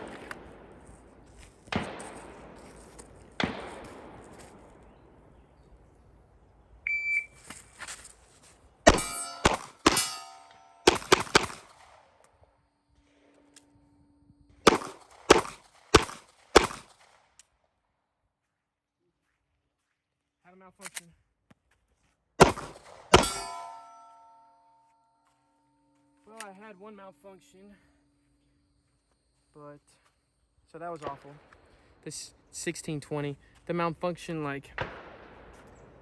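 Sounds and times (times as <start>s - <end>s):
pistol shots: 0.0s - 5.2s, 8.9s - 12.2s, 14.6s - 17.2s, 22.4s - 24.4s, 34.7s - 36.0s
echoing gunshots: 0.0s - 6.0s, 8.8s - 12.2s, 14.6s - 17.3s, 22.4s - 24.4s, 34.7s - 36.0s
shot timer beep: 6.9s - 7.4s.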